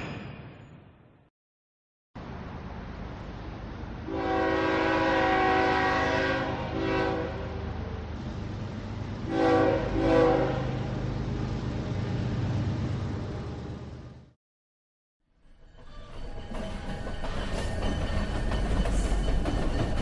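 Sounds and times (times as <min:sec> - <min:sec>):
moving train rumbling: 0:02.2 - 0:14.4, 0:15.4 - 0:20.0
train horn blasts: 0:04.1 - 0:07.9, 0:09.2 - 0:10.9.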